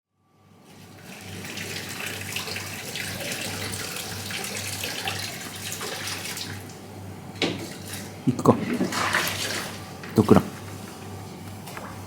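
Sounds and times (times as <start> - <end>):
water running: 0.7 - 10.8.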